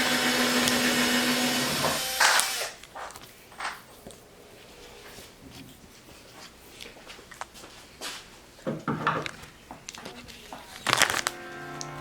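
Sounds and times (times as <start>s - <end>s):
small electric motor humming: 0.0s - 2.8s.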